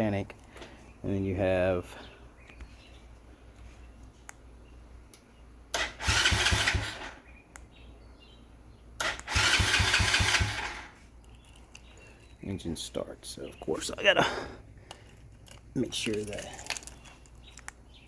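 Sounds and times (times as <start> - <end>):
motorcycle electric starter cranking: 5.7 - 7.2, 9.0 - 11.9.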